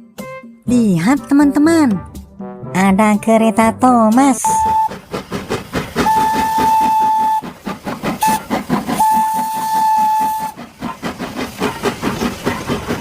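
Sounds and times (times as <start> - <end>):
fast rhythmic chuffing: 4.1 - 13.0
steam train whistle: 4.4 - 5.0, 6.0 - 7.6, 8.2 - 10.6.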